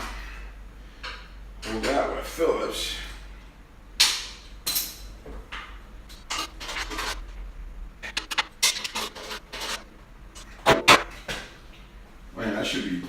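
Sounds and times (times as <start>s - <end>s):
metal parts scraping: 6.1s - 7.4s, 8.0s - 9.8s.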